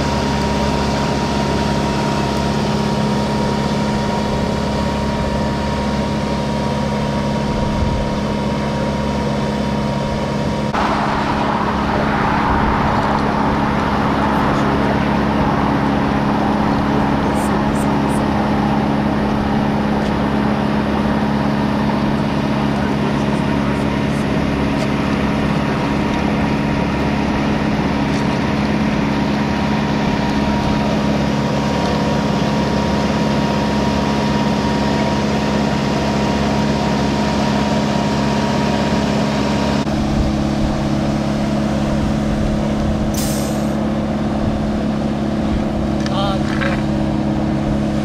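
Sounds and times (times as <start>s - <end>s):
engine running steadily: 0.0s - 48.0s
thin high whine: 10.6s - 20.0s
short hiss: 43.1s - 43.8s.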